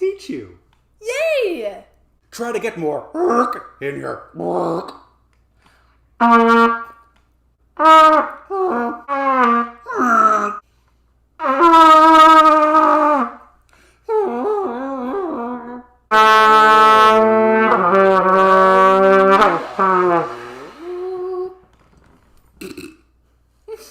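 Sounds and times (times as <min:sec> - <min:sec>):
trumpet blasts imitating elephant: 0:06.2 - 0:07.0, 0:07.8 - 0:10.6, 0:11.4 - 0:13.5, 0:16.1 - 0:21.7
second trumpeting sound: 0:16.1 - 0:21.7.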